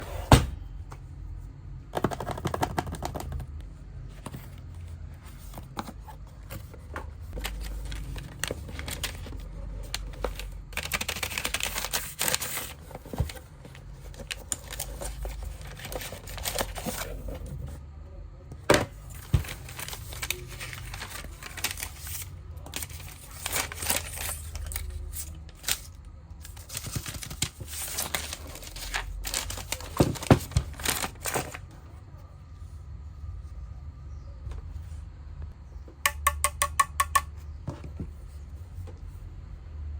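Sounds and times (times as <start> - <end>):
crinkling and scraping: 0.0 - 17.8, 18.6 - 33.6.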